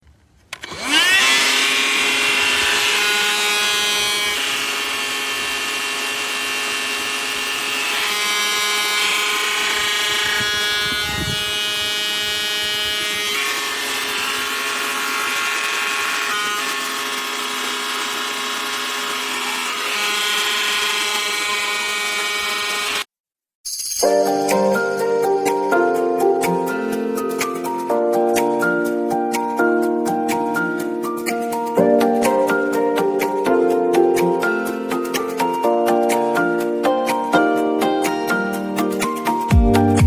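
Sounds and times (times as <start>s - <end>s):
vacuum motor whining: 0.5s - 23.1s.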